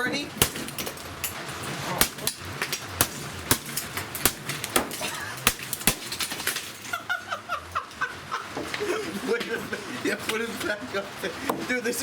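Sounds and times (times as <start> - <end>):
blows smashing an appliance: 0.4 - 7.0.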